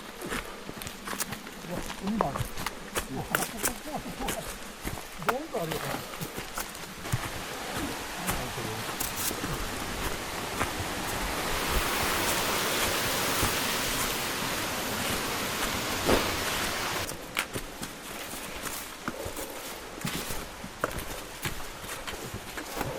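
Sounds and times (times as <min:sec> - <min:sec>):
stream water rushing: 0:02.8 - 0:19.0.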